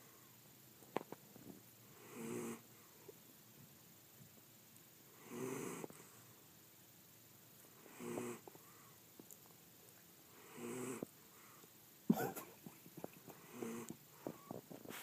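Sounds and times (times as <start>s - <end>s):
rasping snores: 2.0s - 2.6s, 5.2s - 6.0s, 7.8s - 8.5s, 10.4s - 11.1s, 13.4s - 13.9s.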